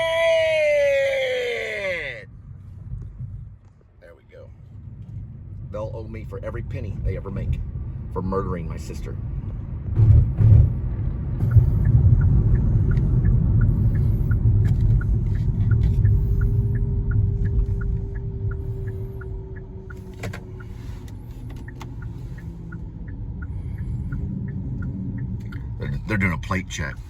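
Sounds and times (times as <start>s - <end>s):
car engine and road rumble: 0.0s - 27.0s
light steady ticking: 10.7s - 27.0s.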